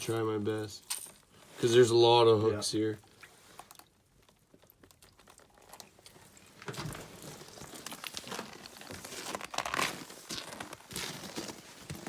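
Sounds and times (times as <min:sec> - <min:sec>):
crinkling rustle: 0:03.1 - 0:12.0.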